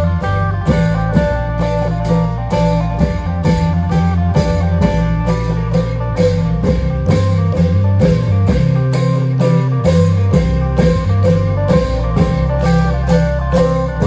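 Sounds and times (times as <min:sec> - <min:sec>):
drums striking steady beat: 0:00.0 - 0:14.0
held bass line: 0:00.0 - 0:14.0
plucked-string melody: 0:00.0 - 0:14.0.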